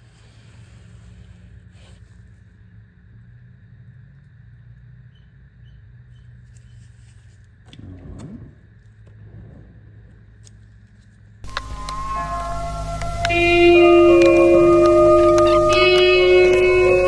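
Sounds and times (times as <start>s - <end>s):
steady low hum: 11.5s - 17.0s.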